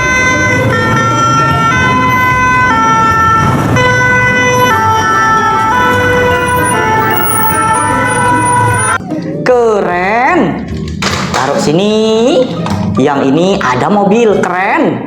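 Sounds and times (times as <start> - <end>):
toy two-tone siren: 0.0 - 9.0.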